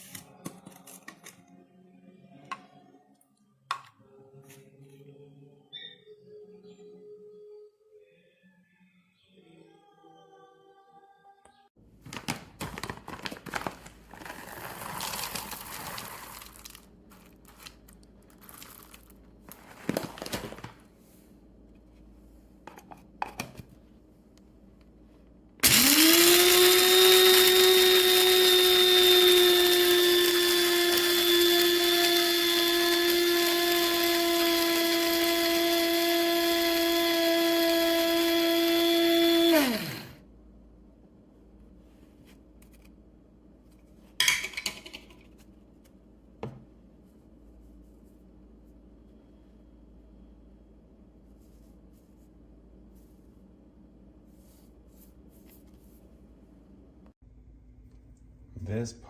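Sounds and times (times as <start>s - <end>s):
coffee grinder motor whining: 25.6s - 40.2s.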